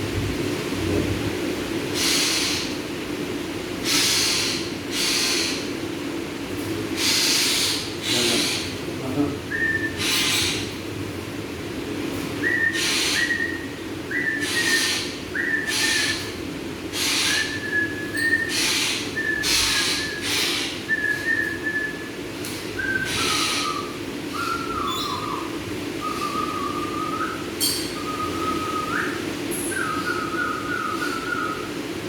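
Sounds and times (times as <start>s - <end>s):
steady low hum: 0.0s - 32.0s
parakeet screeching: 10.0s - 10.7s, 16.9s - 17.7s, 18.3s - 20.8s, 23.0s - 28.1s
thin whistled bird notes: 12.4s - 16.3s, 17.0s - 31.8s.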